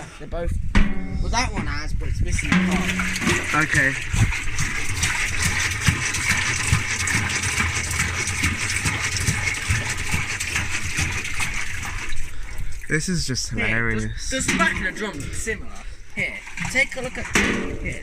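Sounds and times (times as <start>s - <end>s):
water rushing in drum: 0.6s - 18.0s
washing machine motor hum: 2.5s - 12.4s.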